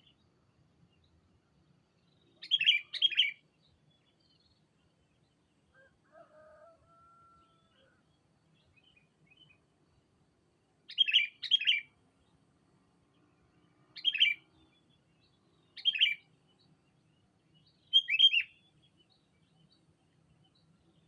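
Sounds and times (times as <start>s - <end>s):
faint drawn-out bird call: 2.1s - 3.4s, 5.7s - 9.6s, 10.9s - 12.0s, 14.0s - 14.5s, 15.6s - 16.4s, 17.6s - 19.8s.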